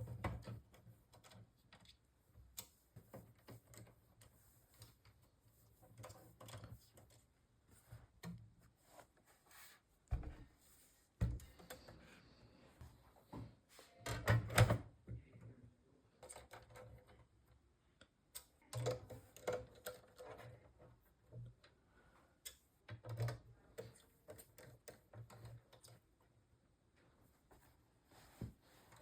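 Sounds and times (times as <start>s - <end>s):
faint small clicks and taps: 0.1s - 8.6s, 16.2s - 21.8s, 22.4s - 26.2s.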